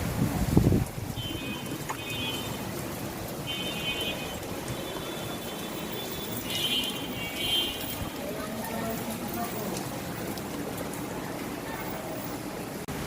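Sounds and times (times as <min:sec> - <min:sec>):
heavy rain: 0:00.0 - 0:13.0.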